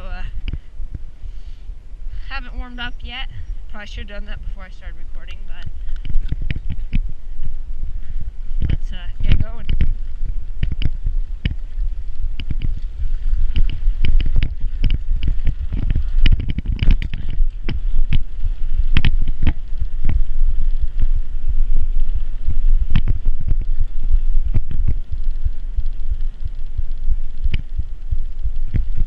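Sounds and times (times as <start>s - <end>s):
wind buffeting microphone: 0.0s - 29.0s
bicycle knocks and rattles: 8.6s - 21.5s.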